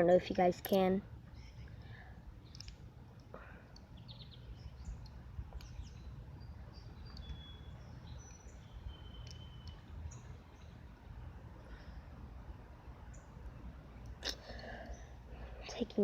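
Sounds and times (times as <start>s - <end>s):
steady low rumble: 0.0s - 16.0s
bird chirps: 3.9s - 10.8s.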